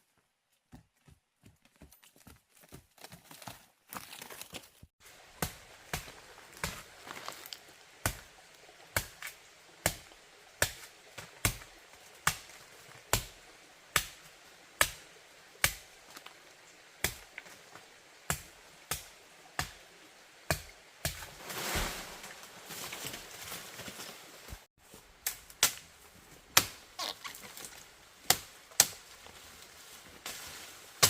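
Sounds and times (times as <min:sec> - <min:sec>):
rustling crunch: 0:01.4 - 0:07.7, 0:21.3 - 0:28.0.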